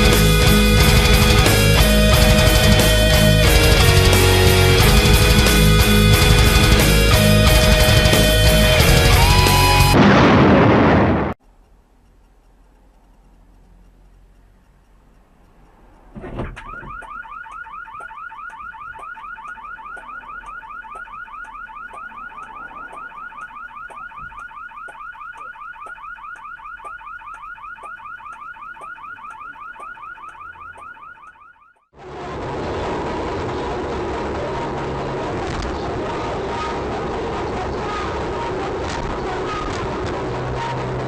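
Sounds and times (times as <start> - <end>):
car alarm chirping: 16.4 - 31.9.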